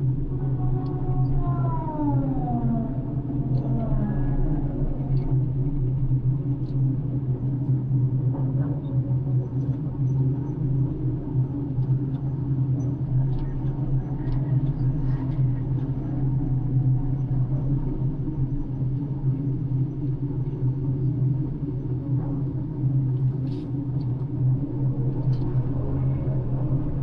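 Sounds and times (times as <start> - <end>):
crane engine droning: 0.0 - 7.7.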